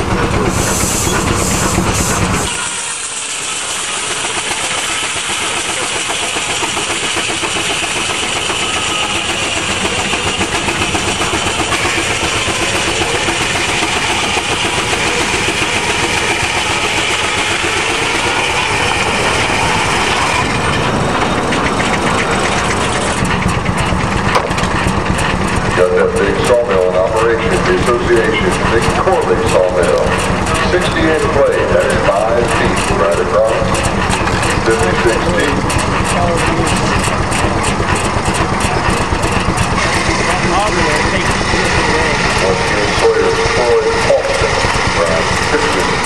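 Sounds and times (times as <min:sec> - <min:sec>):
sawmill machinery din: 0:00.0 - 0:46.0
saw blade cutting wood: 0:00.6 - 0:20.5.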